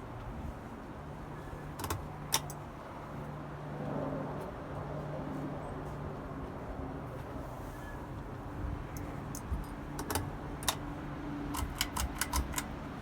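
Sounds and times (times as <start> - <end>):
sharp clicks: 1.8 - 2.6, 9.0 - 10.9, 11.5 - 12.9.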